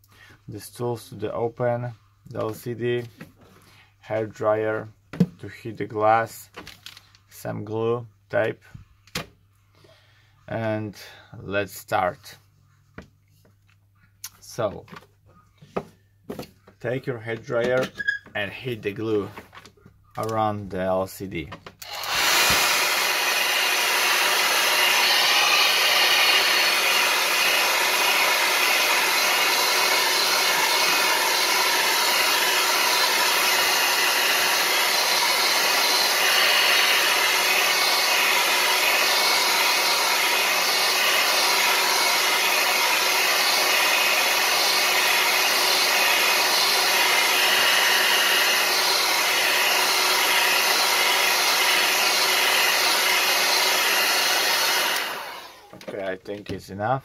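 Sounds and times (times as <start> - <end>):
hair dryer blowing: 21.8 - 55.8.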